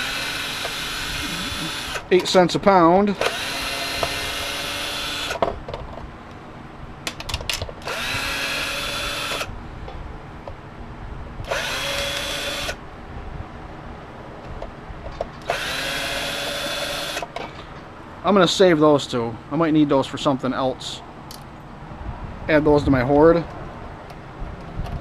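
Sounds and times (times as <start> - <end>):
cordless drill motor whine: 0.0 - 2.1, 3.2 - 5.4, 7.8 - 9.5, 11.4 - 12.8, 15.4 - 17.3.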